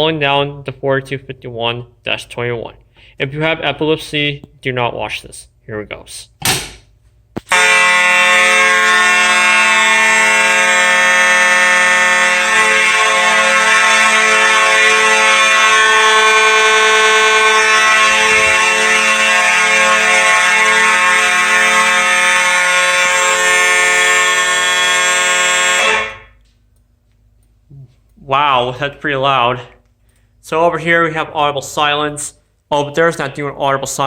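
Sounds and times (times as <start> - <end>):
buzzing fire alarm horn: 7.4 - 26.6.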